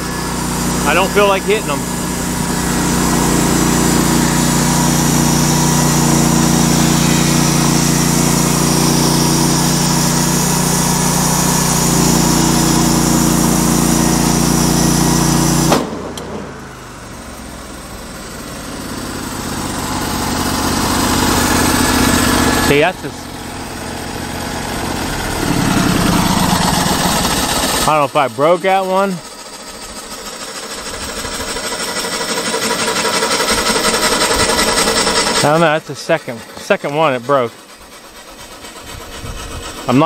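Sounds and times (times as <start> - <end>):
band saw cutting log: 0.0 - 16.8, 18.3 - 40.0
petrol engine running under load: 0.0 - 40.0
sharp crack: 15.6 - 16.4.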